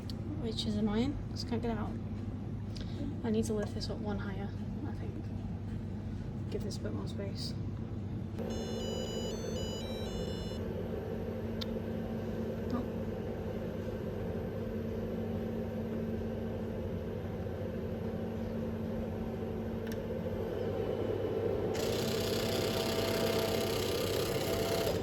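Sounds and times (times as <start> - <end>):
vending machine humming: 8.2 - 25.0.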